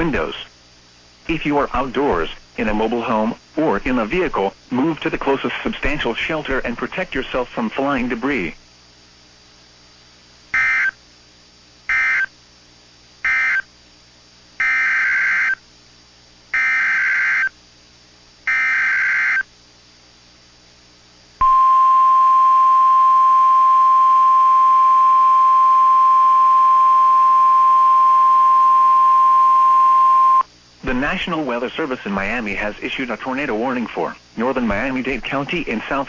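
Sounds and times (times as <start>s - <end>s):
steady warning alarm tone: 10.6s - 11.0s, 11.9s - 12.3s, 13.3s - 13.7s, 14.6s - 15.6s, 16.6s - 17.5s, 18.5s - 19.5s
longer data bursts: 13.2s - 13.7s, 18.4s - 19.5s.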